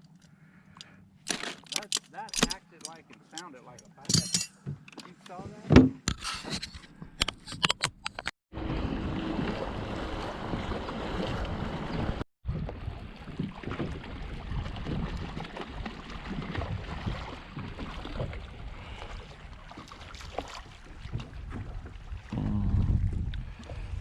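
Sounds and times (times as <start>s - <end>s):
wind buffeting microphone: 21.0s - 24.0s.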